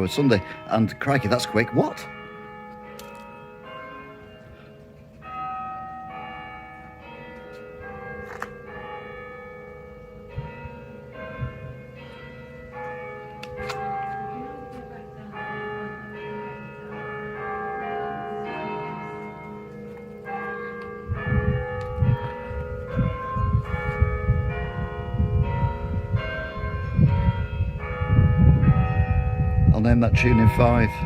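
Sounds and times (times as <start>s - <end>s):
church bells chiming hymn tune: 0.0s - 31.0s.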